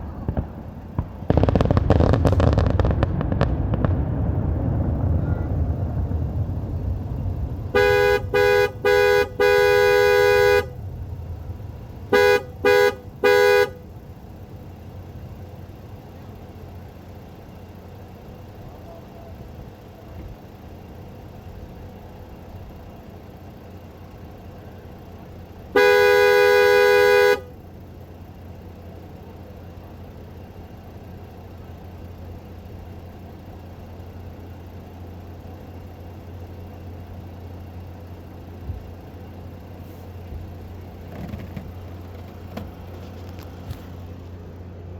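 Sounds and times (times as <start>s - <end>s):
low steady rumble: 0.0s - 44.9s
car horn honking: 7.6s - 14.9s, 24.4s - 27.9s.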